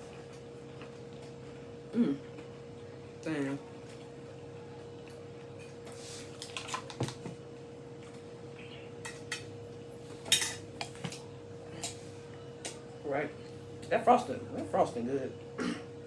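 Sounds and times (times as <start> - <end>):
faint steady hum: 0.0 - 16.0
utensils clinking against bowls: 10.2 - 11.2.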